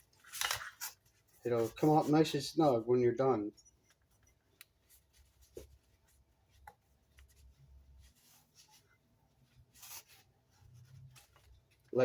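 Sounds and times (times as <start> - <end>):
rope rustle: 3.8 - 12.0.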